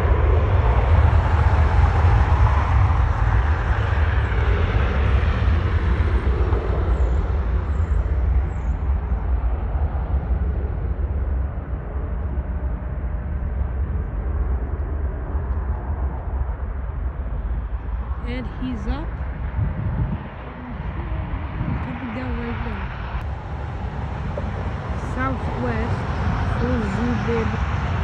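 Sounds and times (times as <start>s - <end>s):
jet engines roaring at takeoff: 0.0s - 28.0s.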